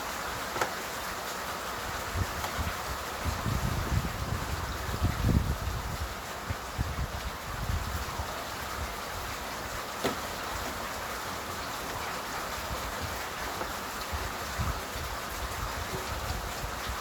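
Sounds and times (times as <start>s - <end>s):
rain hissing: 0.0s - 17.0s.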